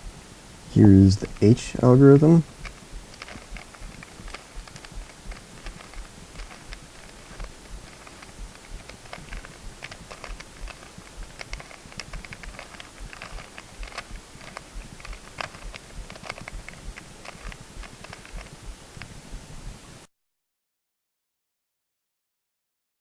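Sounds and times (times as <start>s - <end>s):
plastic puzzle cube clicking: 2.4s - 19.2s.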